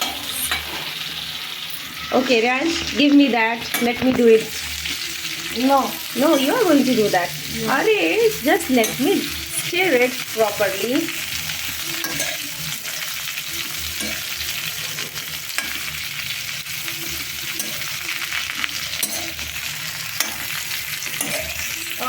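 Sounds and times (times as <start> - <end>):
vegetables sizzling in oil: 0.0 - 22.0
stirring scrapes against pan: 11.1 - 22.0.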